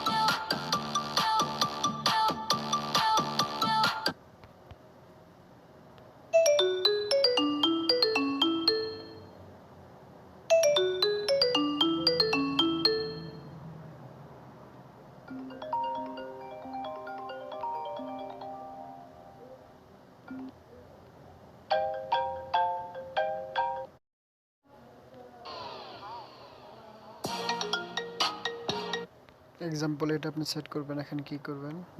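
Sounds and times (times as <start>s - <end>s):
phone ringtone tunes: 6.4s - 9.4s, 10.5s - 13.6s, 15.3s - 19.4s, 27.2s - 29.1s.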